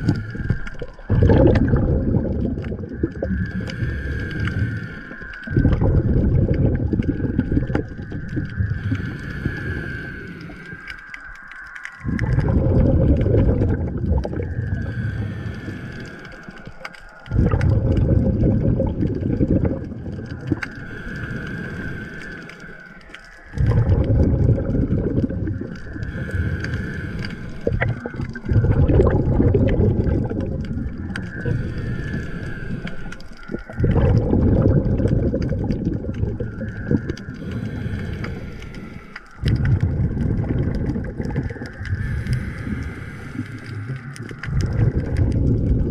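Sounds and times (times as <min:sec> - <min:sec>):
diver exhaling bubbles underwater: 0:00.0 - 0:11.0, 0:11.9 - 0:22.7, 0:23.5 - 0:45.9
regulator inhale hiss: 0:03.5 - 0:05.4, 0:08.7 - 0:11.1, 0:14.5 - 0:17.2, 0:20.5 - 0:23.5, 0:25.8 - 0:28.4, 0:30.8 - 0:33.7, 0:37.0 - 0:39.6, 0:41.6 - 0:44.4.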